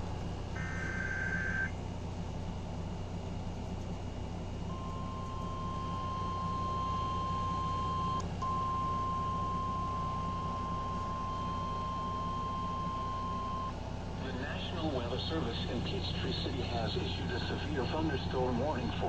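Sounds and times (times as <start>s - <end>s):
steady warning alarm tone: 0.0s - 1.8s, 4.7s - 13.8s
low steady hum: 0.0s - 19.0s.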